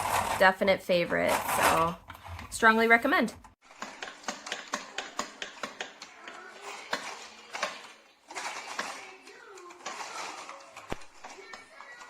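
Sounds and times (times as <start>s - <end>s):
plastic toy gears clicking: 3.8s - 12.0s.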